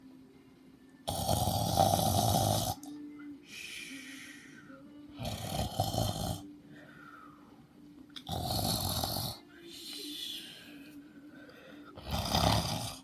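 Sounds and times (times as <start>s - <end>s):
person snoring loudly: 1.1s - 2.9s, 5.2s - 6.5s, 8.2s - 9.4s, 12.0s - 13.0s
soft airy breath: 3.4s - 4.8s, 6.6s - 7.8s, 9.6s - 12.0s.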